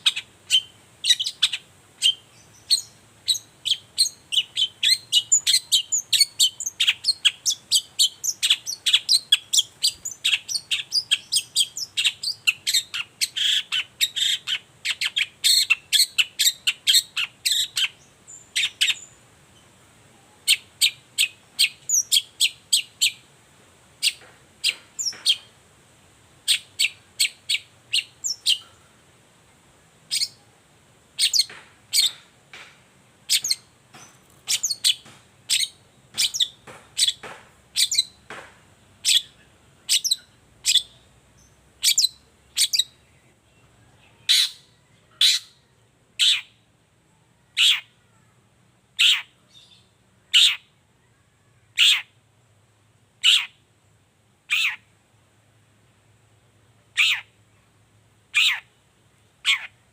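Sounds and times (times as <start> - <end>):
bird singing high chirps: 0.0 - 19.7, 26.5 - 28.8, 30.1 - 30.4, 31.2 - 32.2, 33.3 - 38.2, 39.0 - 46.6.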